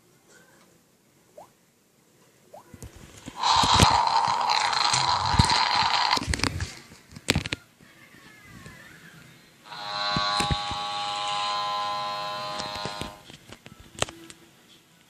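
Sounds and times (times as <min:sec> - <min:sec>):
toy robot electronic buzz: 0:03.4 - 0:06.2, 0:09.7 - 0:13.2
clicks: 0:09.7 - 0:11.5, 0:12.4 - 0:14.2.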